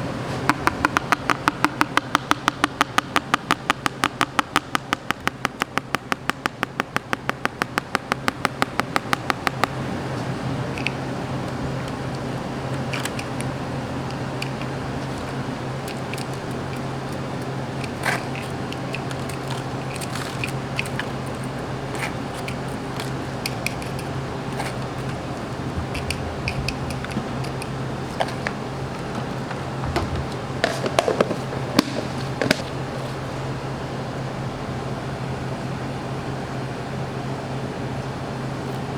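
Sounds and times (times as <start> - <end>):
kitchen machinery hum: 0.0 - 38.9
utensils clicking and scraping: 10.6 - 32.7
louder knocks: 28.3 - 32.6.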